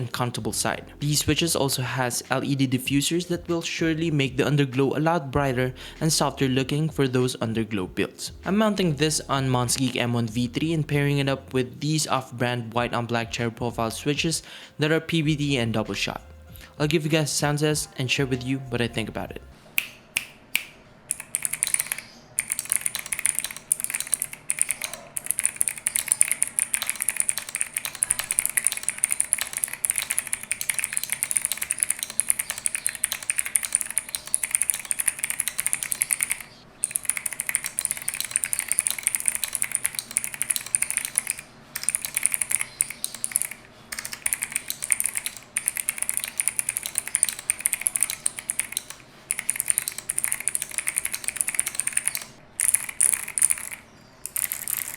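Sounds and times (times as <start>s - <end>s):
fast typing on mechanical keyboard: 21.1s - 54.9s.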